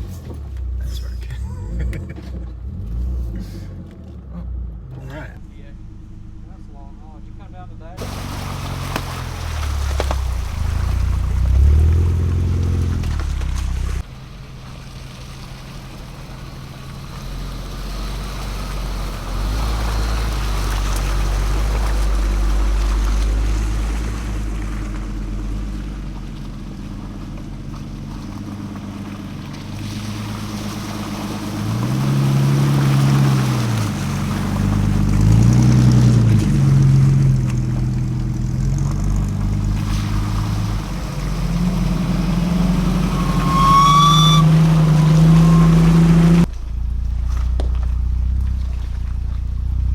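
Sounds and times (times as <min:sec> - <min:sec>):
off-road vehicle engines revving: 0:00.0 - 0:49.9.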